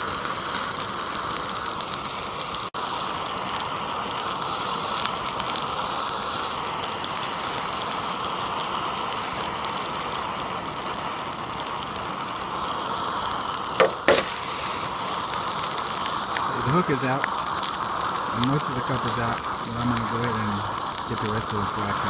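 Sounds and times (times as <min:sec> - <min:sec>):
gas torch flame: 0:00.0 - 0:22.0
fine crackling: 0:13.8 - 0:22.0.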